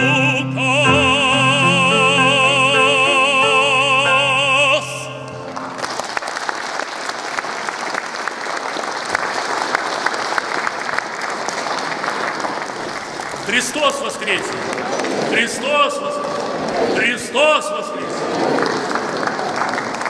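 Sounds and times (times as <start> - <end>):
man singing opera: 0.0 - 5.5
piano chords: 0.0 - 6.2
audience applause: 5.3 - 17.2, 17.9 - 20.0.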